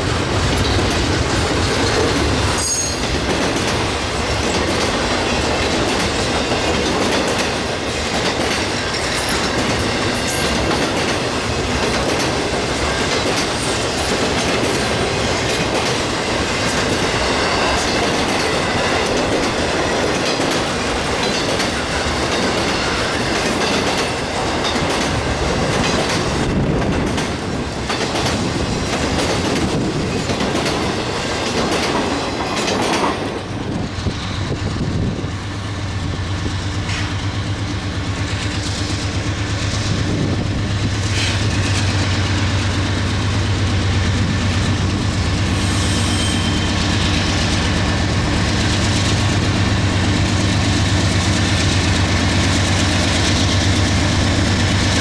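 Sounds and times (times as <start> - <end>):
train wheels clicking over rail joints: 0.0 - 55.0
wheel squeal: 2.2 - 3.2, 45.4 - 47.2.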